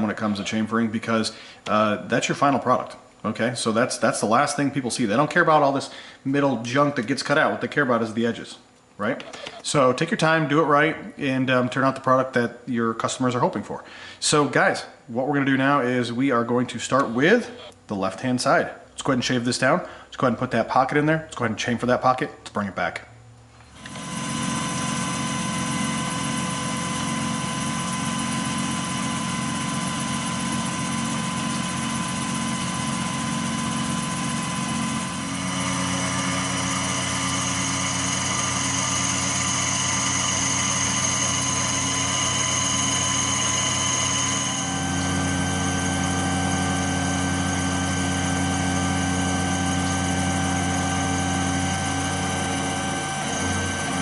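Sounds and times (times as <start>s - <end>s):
milling machine whine: 23.6s - 54.0s.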